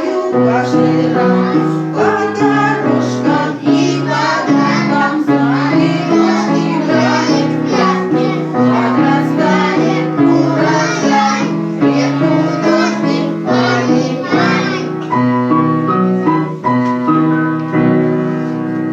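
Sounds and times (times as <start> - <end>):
children singing: 0.0 - 15.1
piano accompaniment: 0.0 - 18.9.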